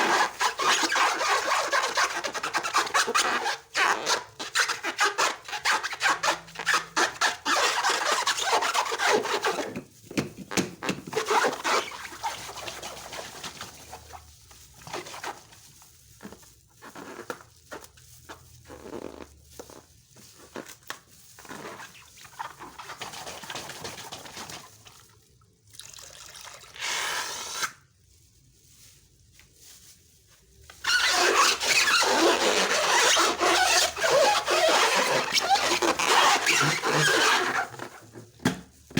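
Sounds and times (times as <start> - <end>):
slime squeak: 0.0 - 9.8, 10.5 - 14.0, 30.8 - 38.2.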